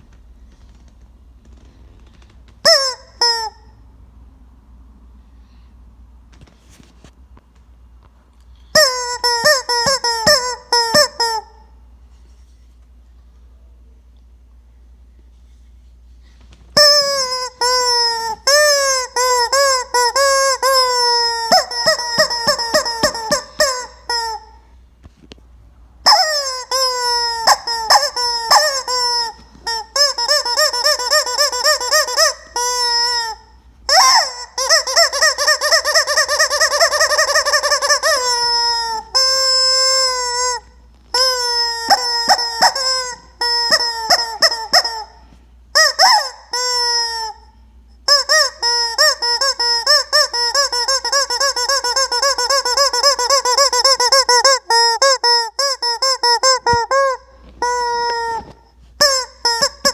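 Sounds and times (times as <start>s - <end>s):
rubber chicken squeak toy squawking: 2.6s - 3.8s, 8.7s - 11.7s, 16.8s - 24.7s, 26.0s - 59.9s.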